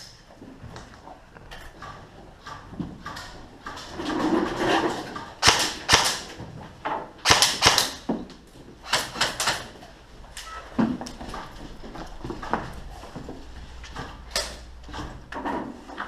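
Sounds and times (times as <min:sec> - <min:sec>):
airsoft guns firing: 0:05.4 - 0:06.4, 0:07.2 - 0:08.1, 0:08.8 - 0:09.8.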